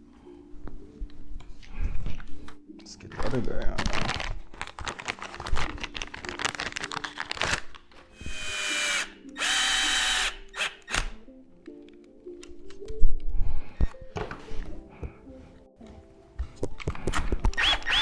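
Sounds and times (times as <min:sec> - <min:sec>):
cordless power driver spinning: 0:08.2 - 0:11.2, 0:17.5 - 0:18.0.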